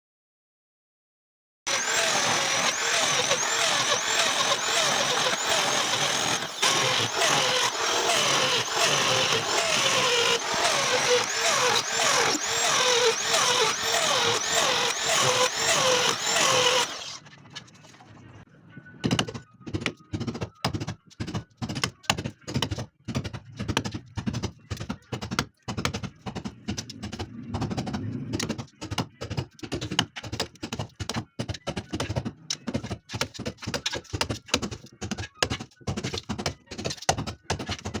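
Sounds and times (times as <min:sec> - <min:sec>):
electric drill grinding into masonry: 0:01.7 - 0:17.2.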